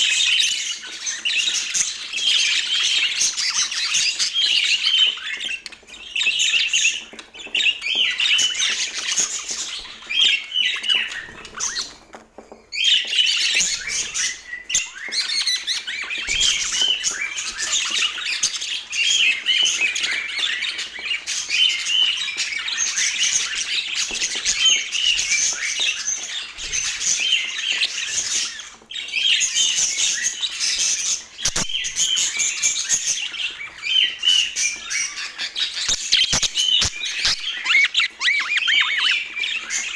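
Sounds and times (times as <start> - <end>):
budgerigars chattering: 29.2 - 39.9.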